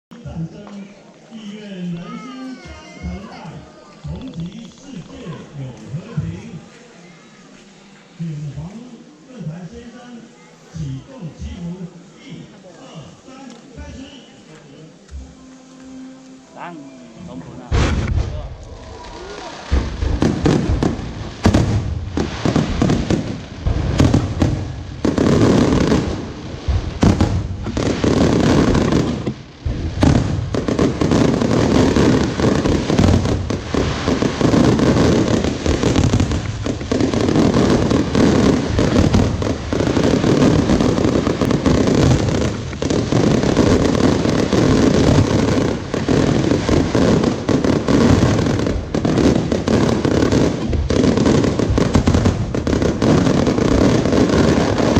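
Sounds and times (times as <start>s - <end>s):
fireworks bangs and crackling: 2.0s - 6.7s, 17.7s - 54.9s.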